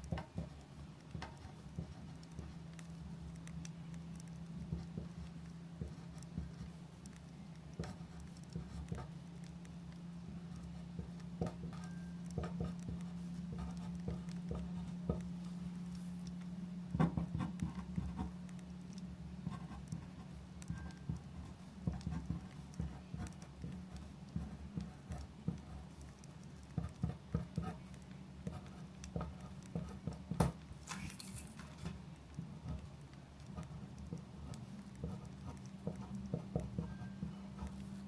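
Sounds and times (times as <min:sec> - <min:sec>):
pen scratching on paper: 0:01.2 - 0:02.6, 0:04.2 - 0:09.2, 0:12.4 - 0:15.2, 0:17.0 - 0:18.3, 0:19.4 - 0:30.5, 0:32.6 - 0:38.0.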